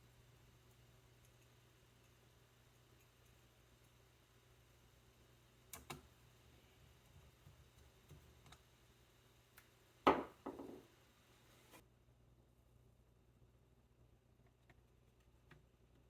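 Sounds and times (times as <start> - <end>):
small hardware clicks and ticks: 0.6 - 4.1, 5.6 - 6.2
knock inside laptop: 10.1 - 10.8.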